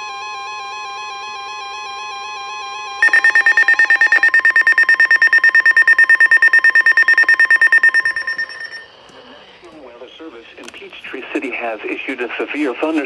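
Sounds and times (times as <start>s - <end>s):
steady warning alarm tone: 3.0s - 8.8s
rapid pulsing alarm beep: 3.0s - 8.9s.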